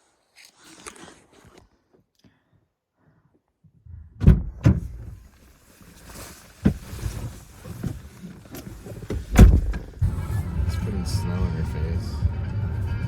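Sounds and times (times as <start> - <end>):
low rumble: 9.4 - 13.0.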